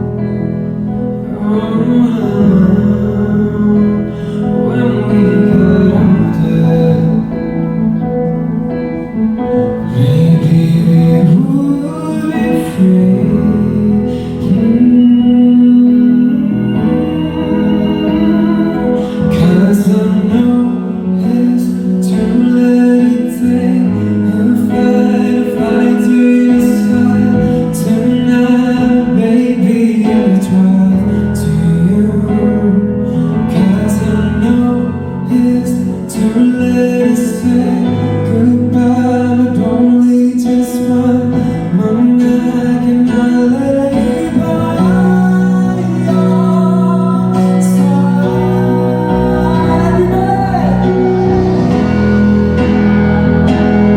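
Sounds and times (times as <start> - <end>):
live band playing pop ballad: 0.0 - 53.9
person singing: 0.0 - 53.9.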